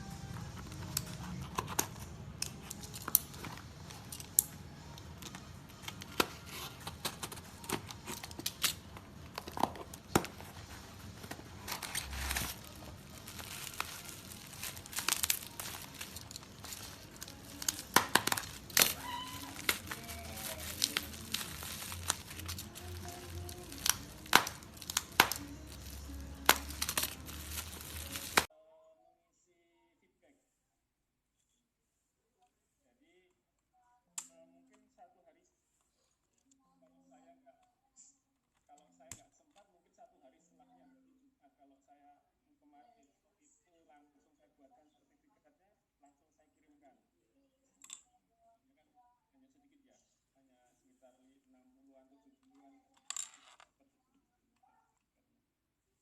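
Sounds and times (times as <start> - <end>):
quiet background music: 0.0 - 56.0
plastic packaging crinkling: 0.4 - 4.5, 5.2 - 28.5.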